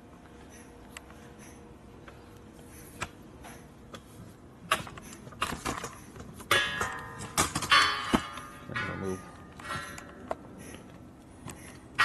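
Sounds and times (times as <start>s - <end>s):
metal tools clinking and rattling: 4.8s - 10.7s
loud ringing metal clank: 6.5s - 10.0s.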